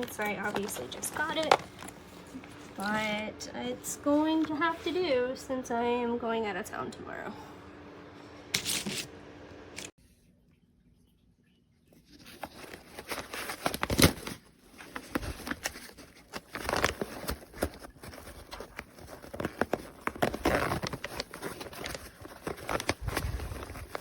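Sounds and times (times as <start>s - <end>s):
rustling and crinkling: 0.0s - 3.3s, 11.9s - 24.0s.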